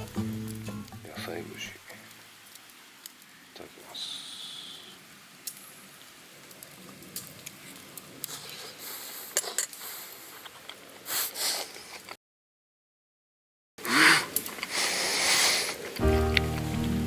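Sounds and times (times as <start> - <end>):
campfire crackling and popping: 0.0 - 4.2, 4.8 - 11.2, 14.1 - 17.0.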